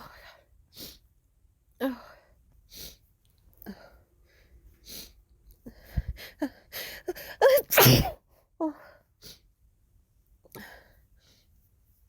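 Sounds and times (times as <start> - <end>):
woman breathing and gasping: 3.6 - 7.8
woman sneezing: 7.4 - 8.2.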